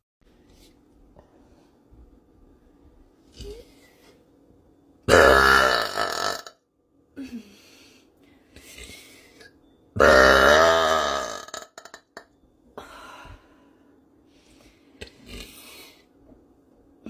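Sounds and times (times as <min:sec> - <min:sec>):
woman burping loudly: 0:05.1 - 0:06.6, 0:10.0 - 0:12.2.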